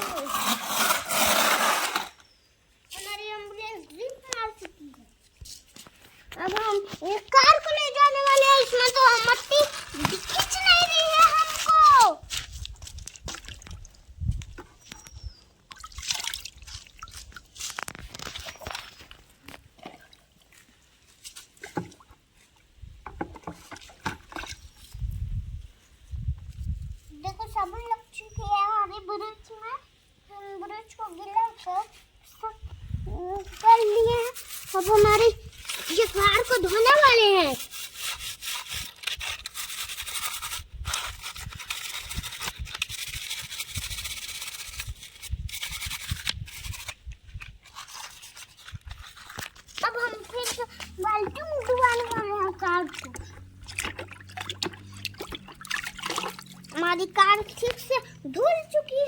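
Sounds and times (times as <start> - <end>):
brush scrubbing: 0.0 - 2.2, 6.4 - 12.4, 33.3 - 47.0, 47.6 - 59.0
water splashing and dripping: 12.5 - 14.1, 15.6 - 19.2, 48.2 - 58.2.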